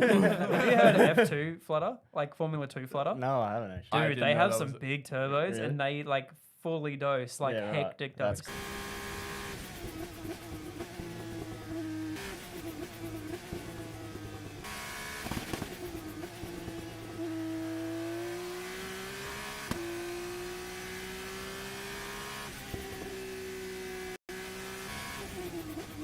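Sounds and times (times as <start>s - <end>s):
turbo fluttering: 8.5s - 17.8s
race car engine at high revs: 8.5s - 26.0s.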